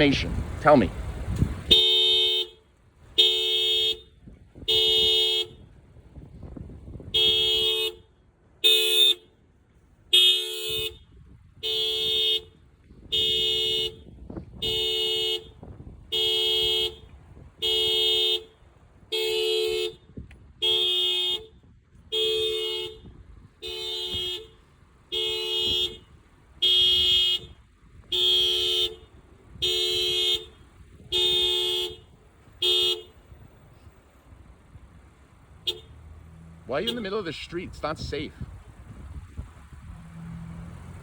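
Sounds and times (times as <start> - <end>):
car horn honking: 1.6 - 5.8, 7.0 - 9.4, 10.1 - 33.7, 35.3 - 38.4.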